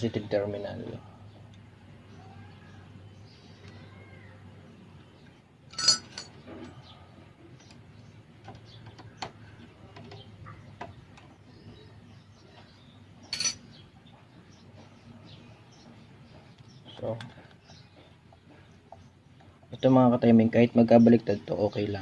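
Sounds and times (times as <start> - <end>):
sharp metallic clinks: 5.7 - 6.4, 13.2 - 13.8.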